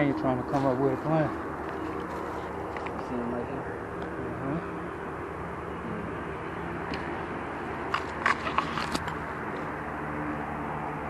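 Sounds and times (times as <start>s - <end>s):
faint hum: 0.0s - 7.8s.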